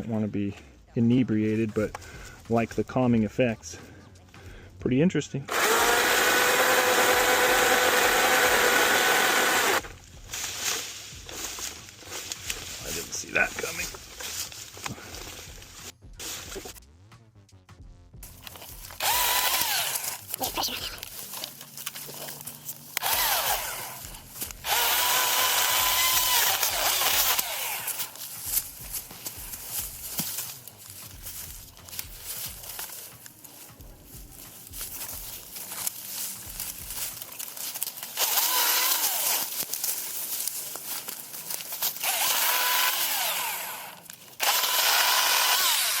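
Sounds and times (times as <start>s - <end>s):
electric chainsaw whine: 5.5s - 12.6s, 18.2s - 33.2s, 34.3s - 46.0s.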